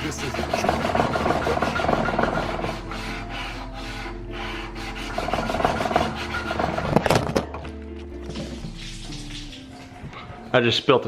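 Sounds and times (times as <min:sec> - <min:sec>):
hand rasp filing wood: 0:00.0 - 0:07.2.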